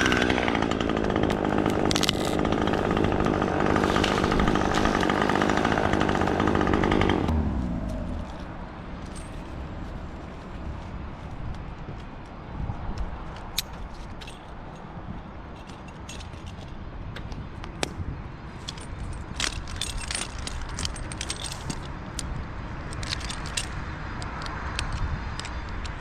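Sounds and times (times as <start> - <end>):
twigs crackling: 0.0 - 7.2
climbing gear clinking: 0.0 - 12.3, 13.2 - 16.8, 18.5 - 26.0.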